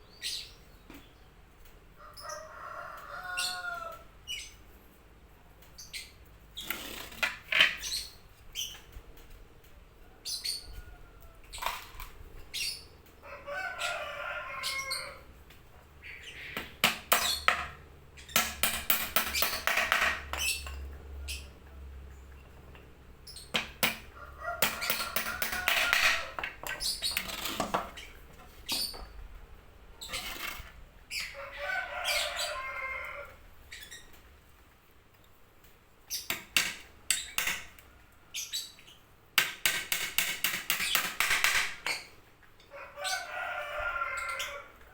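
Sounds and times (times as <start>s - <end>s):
chickens clucking and crowing: 1.4s - 5.6s, 9.1s - 36.4s, 40.8s - 44.9s.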